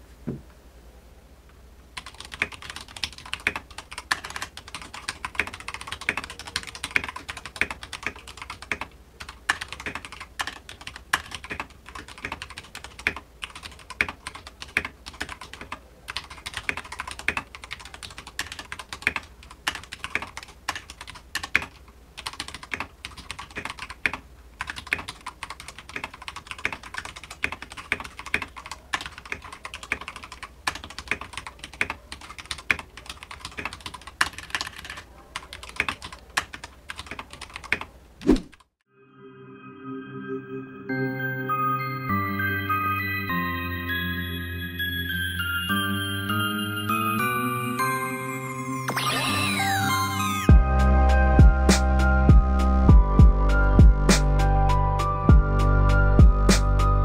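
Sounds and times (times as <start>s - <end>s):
mechanical keyboard typing: 2.0s - 37.9s.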